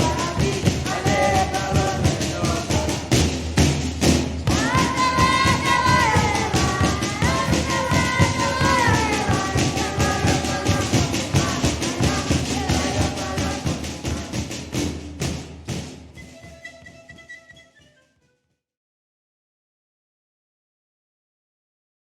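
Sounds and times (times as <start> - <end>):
steady drum beat: 0.0 - 17.3
panpipes playing a melody: 16.2 - 18.3.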